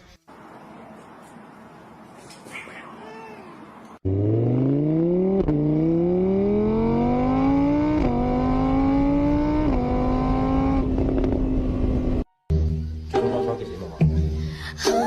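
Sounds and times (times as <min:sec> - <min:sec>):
vehicle engine accelerating: 0:04.0 - 0:12.3.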